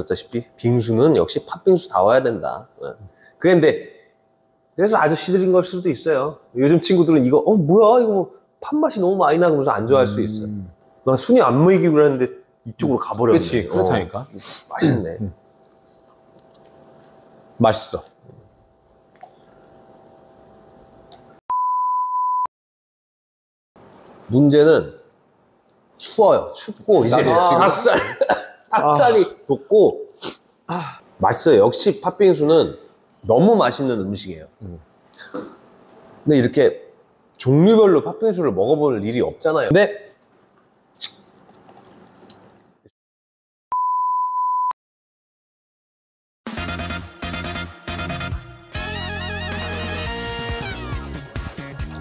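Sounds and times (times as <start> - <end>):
faint room noise: 23.8 - 42.8
background music: 46.5 - 52.0.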